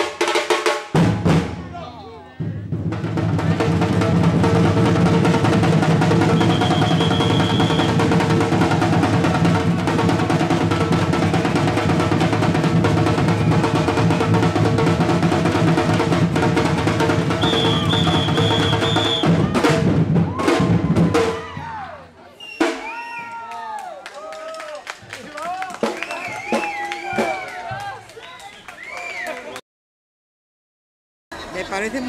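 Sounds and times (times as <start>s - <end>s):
bass and snare drumming: 0.0s - 23.4s, 25.2s - 27.8s
high whistle blasts: 6.3s - 8.0s, 17.4s - 19.4s, 22.4s - 23.5s, 26.0s - 27.7s.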